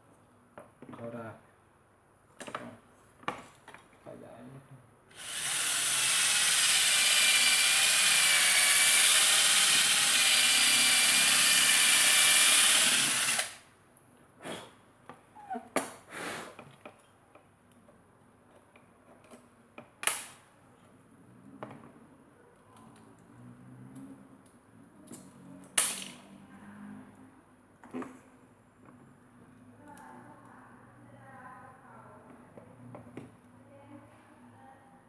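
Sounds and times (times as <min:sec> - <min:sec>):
electric drill running: 0:05.1 - 0:13.6.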